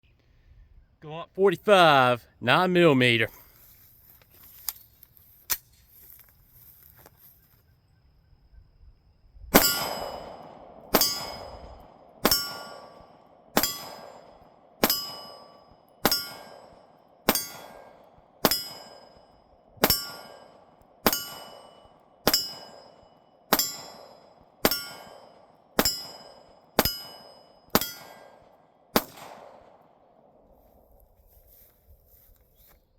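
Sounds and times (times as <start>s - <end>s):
pistol shots: 9.5s - 30.4s
metallic ringing: 9.6s - 28.2s.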